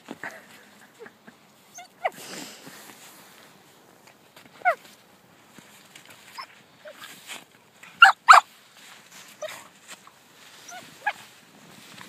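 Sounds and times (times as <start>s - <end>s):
puppy yipping: 1.7s - 2.2s, 8.0s - 8.5s, 10.7s - 11.2s.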